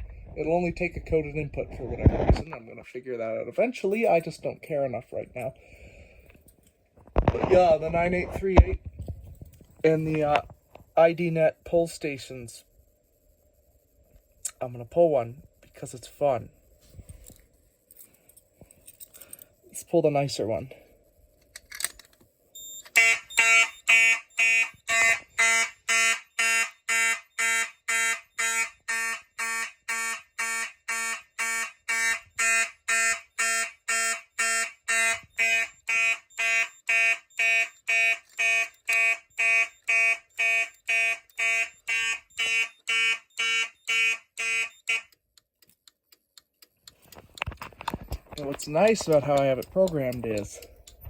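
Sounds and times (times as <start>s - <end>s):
fire alarm horn blasts: 22.9s - 45.2s.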